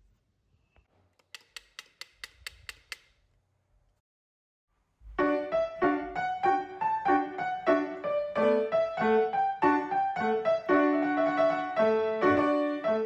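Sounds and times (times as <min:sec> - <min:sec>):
wood block ticks: 0:01.2 - 0:03.2
piano music: 0:05.2 - 0:13.0.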